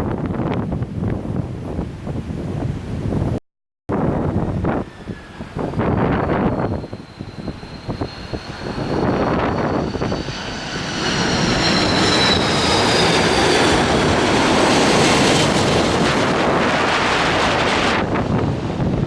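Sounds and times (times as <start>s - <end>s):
jet airliner passing overhead: 4.0s - 19.0s.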